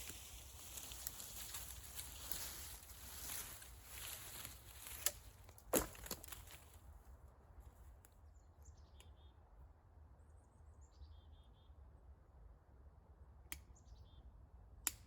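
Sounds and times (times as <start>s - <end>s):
songbird chirps: 0.0s - 6.8s, 7.8s - 12.0s.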